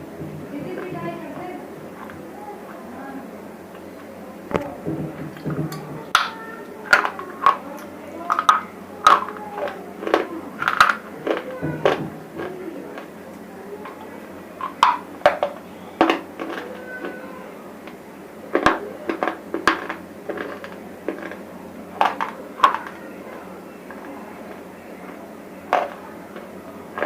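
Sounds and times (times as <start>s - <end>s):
dry crunching of small chips: 6.1s - 17.2s, 17.9s - 27.0s.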